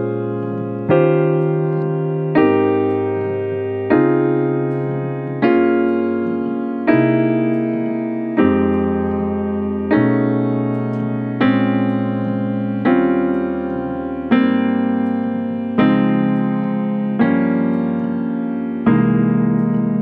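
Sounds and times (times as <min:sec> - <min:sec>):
piano playing jazz chords: 0:00.0 - 0:20.0.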